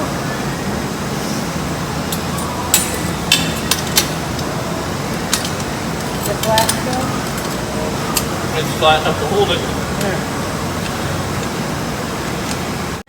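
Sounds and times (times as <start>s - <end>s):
steady background hiss: 0.0s - 13.0s
parts clicking and knocking: 2.1s - 4.5s, 5.1s - 8.3s.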